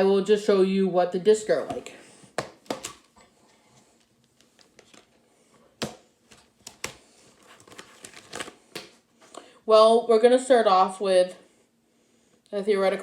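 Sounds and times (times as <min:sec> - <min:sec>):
plastic disc cases clicking: 0:05.8 - 0:07.0, 0:07.6 - 0:08.9.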